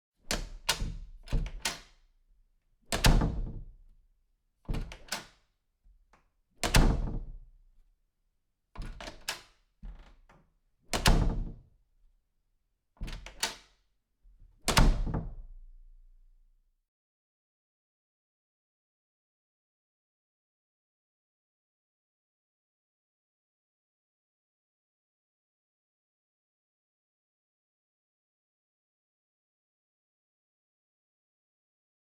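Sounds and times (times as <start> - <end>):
door closing with heavy thunk: 0.3 - 1.8, 2.9 - 3.8, 4.7 - 5.2, 6.6 - 7.4, 8.8 - 10.1, 10.9 - 11.6, 14.7 - 15.5
door latch and handle clicks: 0.3 - 2.0, 2.9 - 3.8, 4.7 - 5.4, 6.6 - 7.4, 8.8 - 11.6, 13.0 - 13.7, 14.7 - 15.6.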